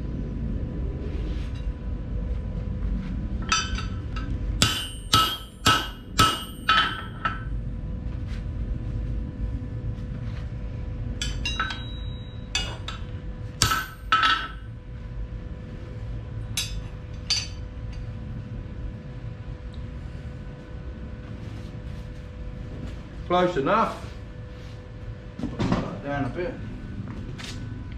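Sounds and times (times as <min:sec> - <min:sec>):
steady low hum: 0:00.0 - 0:27.9
hammer ringing on steel bar: 0:04.6 - 0:07.4, 0:11.2 - 0:13.0, 0:13.6 - 0:14.6.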